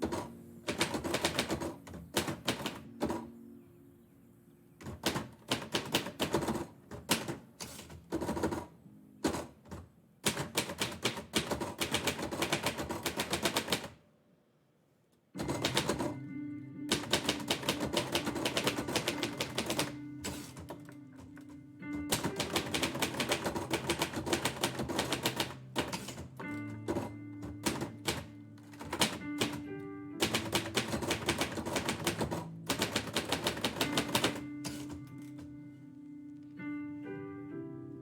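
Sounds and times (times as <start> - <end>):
typewriter keys typing: 0.0 - 3.3, 4.8 - 14.0, 15.4 - 16.3, 16.9 - 35.6
mellow instrumental music: 0.0 - 13.7, 15.3 - 38.0.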